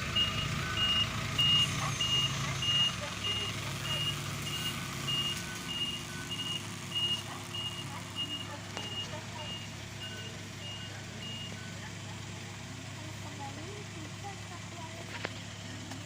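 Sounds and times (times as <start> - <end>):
backup alarm beeping: 0.0 - 12.0
diesel engine humming: 0.0 - 16.0.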